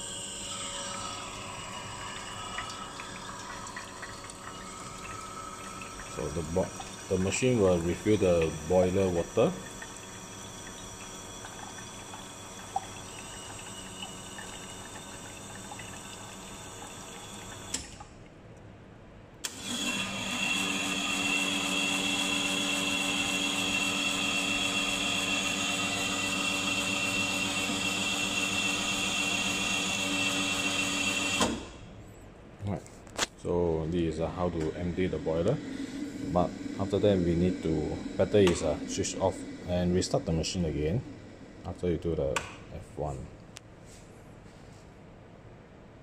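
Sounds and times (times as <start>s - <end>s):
espresso machine hum: 0.0s - 17.8s, 19.5s - 31.8s, 33.7s - 41.8s
pump humming: 0.0s - 18.2s, 19.4s - 31.8s, 33.6s - 42.0s.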